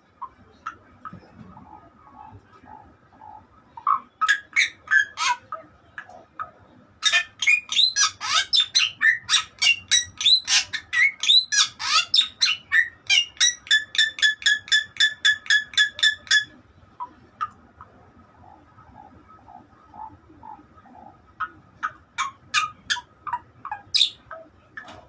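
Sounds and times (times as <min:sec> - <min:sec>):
bird singing whistled calls: 0:07.4 - 0:16.5.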